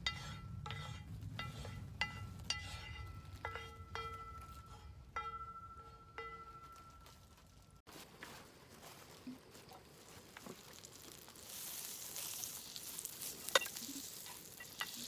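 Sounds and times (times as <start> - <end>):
bell-like ringing strikes: 1.4 - 7.2.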